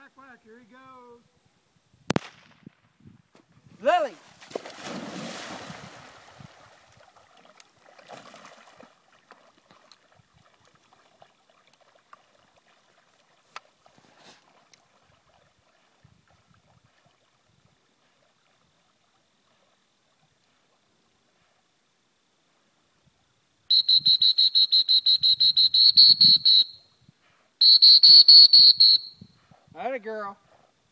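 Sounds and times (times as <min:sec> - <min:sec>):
faint water sounds: 0:03.8 - 0:23.7
dog splashing into water: 0:04.4 - 0:12.8.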